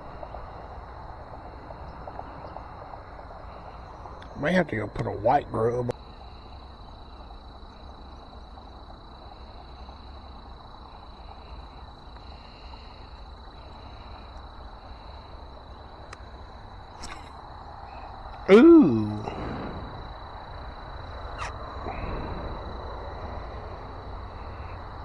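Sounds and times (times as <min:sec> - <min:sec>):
faint pulsing insect calls: 0:00.0 - 0:25.0.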